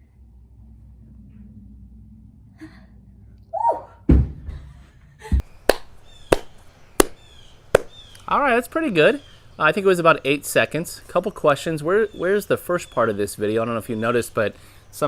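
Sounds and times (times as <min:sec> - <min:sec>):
low room hum: 0:00.0 - 0:07.6
sharp slaps on floor: 0:05.7 - 0:08.0.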